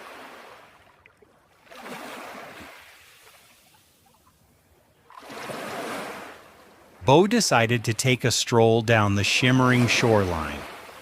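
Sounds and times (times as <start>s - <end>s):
ocean waves washing on beach: 0.0s - 0.9s, 1.5s - 4.4s, 5.0s - 11.0s.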